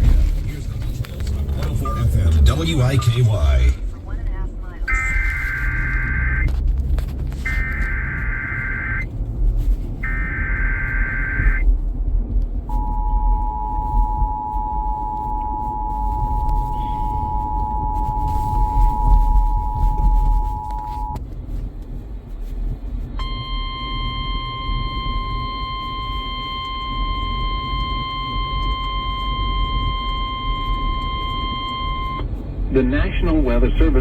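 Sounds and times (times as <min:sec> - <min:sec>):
warbling data bursts: 0:04.8 - 0:06.5, 0:07.5 - 0:09.0, 0:10.0 - 0:11.6
two-tone attention signal: 0:04.9 - 0:06.5, 0:07.5 - 0:09.0, 0:10.0 - 0:11.6, 0:12.8 - 0:21.2, 0:23.2 - 0:32.2.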